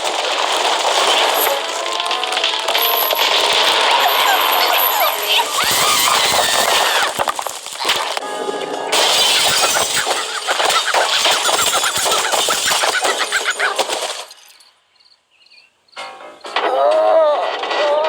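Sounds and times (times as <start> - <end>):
crashing and clattering effects: 0.0 - 14.7, 16.0 - 18.0
cartoon music: 1.5 - 7.1, 7.8 - 14.1.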